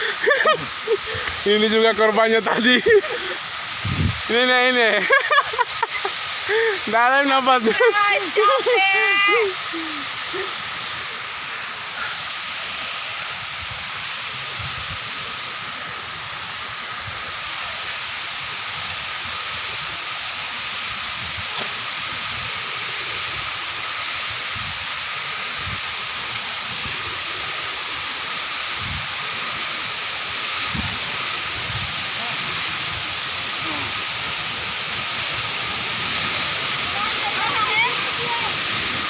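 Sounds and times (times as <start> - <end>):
waterfall rushing: 0.0 - 39.0.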